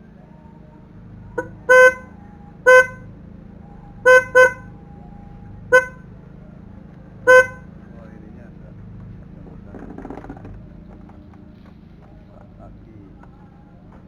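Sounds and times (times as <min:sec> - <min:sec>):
scooter horn beeps: 0:01.4 - 0:02.1, 0:02.7 - 0:03.0, 0:04.1 - 0:04.7, 0:05.7 - 0:06.0, 0:07.3 - 0:07.6.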